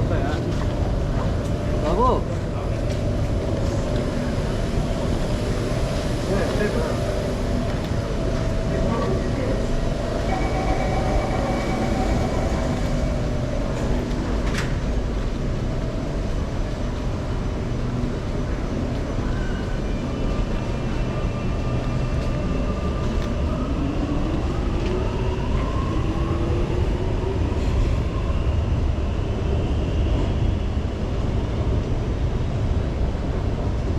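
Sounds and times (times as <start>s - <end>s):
train wheels rumbling on track: 0.0s - 33.9s
train whine: 0.0s - 33.9s.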